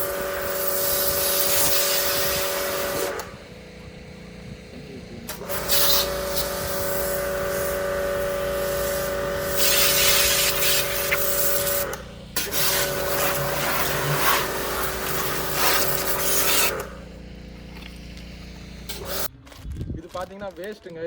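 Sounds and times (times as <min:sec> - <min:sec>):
water jet hissing: 0:00.0 - 0:03.2, 0:05.3 - 0:17.1
pressure washer motor hum: 0:00.0 - 0:19.3.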